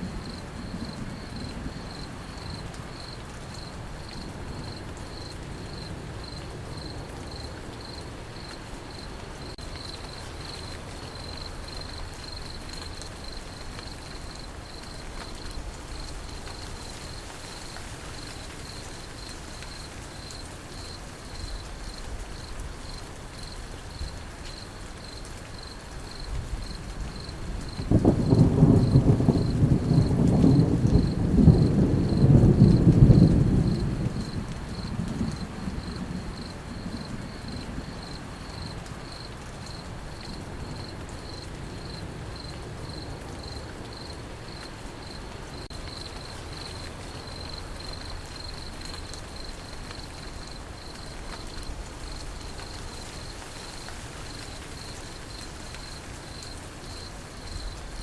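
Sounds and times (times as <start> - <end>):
low rumble of thunder: 0.0 - 22.8, 26.0 - 58.0
crickets chirping: 0.0 - 58.0
rain patter: 0.0 - 58.0.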